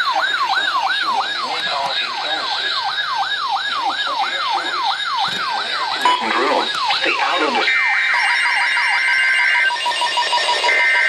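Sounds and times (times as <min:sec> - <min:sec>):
faint voices: 0:00.0 - 0:07.7
siren-like warning tone: 0:00.0 - 0:11.0.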